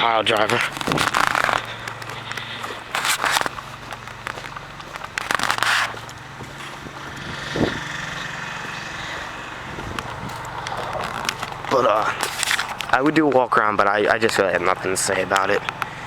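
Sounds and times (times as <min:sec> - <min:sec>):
steady low hum: 0:00.0 - 0:16.0
wind buffeting microphone: 0:05.9 - 0:11.9.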